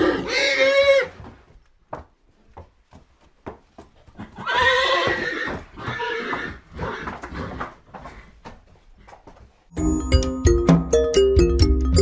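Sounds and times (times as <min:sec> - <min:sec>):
horse whinnying: 0:00.0 - 0:01.3, 0:04.2 - 0:07.8.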